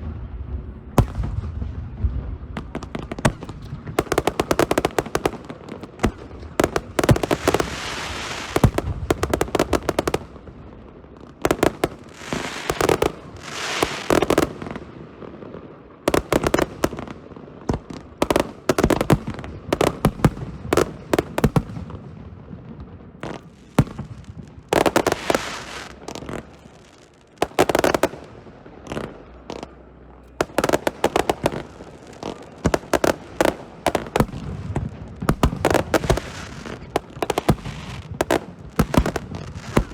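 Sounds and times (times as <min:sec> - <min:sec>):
fireworks crackling: 0:00.0 - 0:39.9
firework shells bursting: 0:30.4 - 0:39.9.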